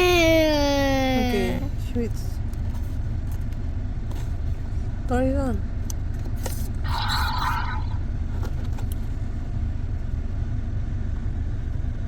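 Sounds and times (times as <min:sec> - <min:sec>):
road rumble inside car: 0:00.0 - 0:12.0
toy electronic dragon roar: 0:06.8 - 0:08.0.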